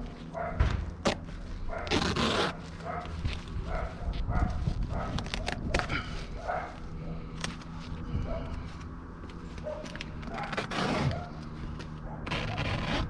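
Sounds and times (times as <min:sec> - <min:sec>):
scraping rasp: 0:01.8 - 0:02.6, 0:10.4 - 0:11.4, 0:12.2 - 0:13.0.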